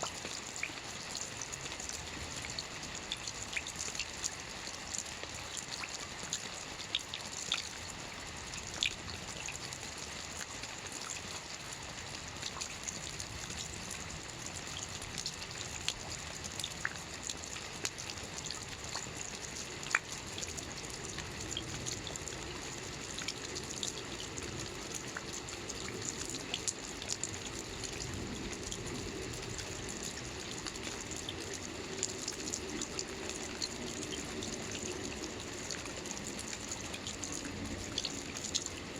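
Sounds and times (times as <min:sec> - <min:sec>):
running water rush: 0:00.0 - 0:38.9
steady rain: 0:00.0 - 0:38.9
raindrops ticking: 0:12.0 - 0:38.9.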